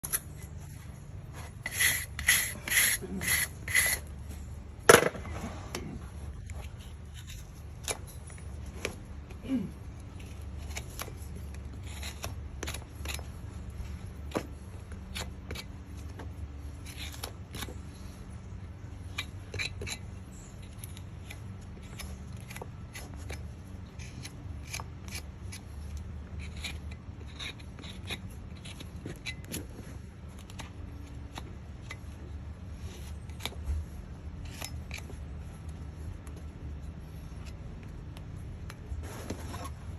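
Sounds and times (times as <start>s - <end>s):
tool scraping hoof: 0.0s - 9.4s, 10.0s - 39.9s.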